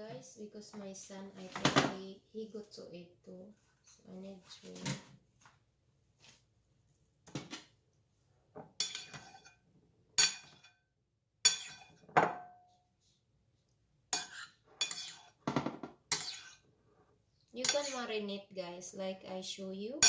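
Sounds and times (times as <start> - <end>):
dishes and kitchenware clattering: 8.6 - 9.6, 10.2 - 10.8, 11.4 - 12.6, 14.2 - 16.6, 17.6 - 18.1.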